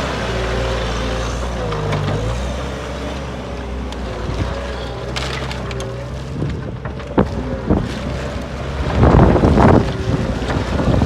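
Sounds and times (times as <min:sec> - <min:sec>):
skid steer engine running: 0:00.0 - 0:11.0
wind buffeting microphone: 0:06.2 - 0:11.0.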